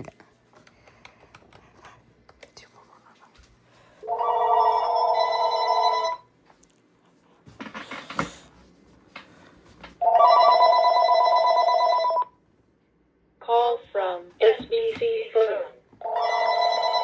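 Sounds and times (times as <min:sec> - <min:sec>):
electronic telephone ringing: 0:04.0 - 0:06.3, 0:10.0 - 0:12.3, 0:16.0 - 0:17.0.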